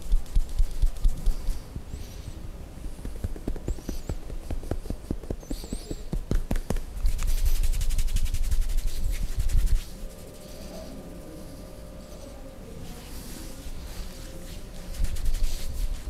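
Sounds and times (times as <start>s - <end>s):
fast tapping strikes: 0.0s - 1.9s, 2.8s - 8.8s
hands tapping and rubbing: 0.0s - 1.9s, 2.8s - 9.9s, 14.9s - 16.0s.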